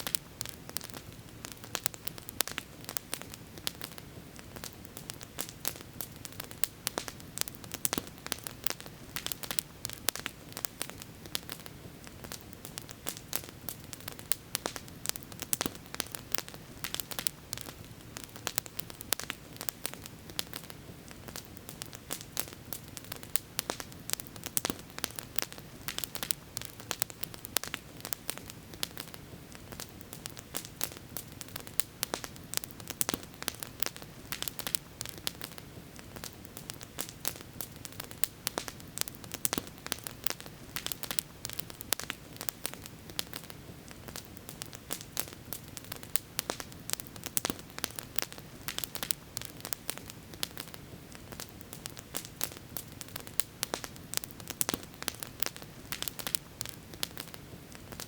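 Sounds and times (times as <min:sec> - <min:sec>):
campfire crackling: 0:00.0 - 0:58.0.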